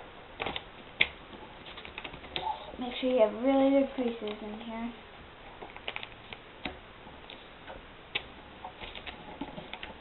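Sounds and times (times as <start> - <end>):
paper being folded: 8.8 - 9.9.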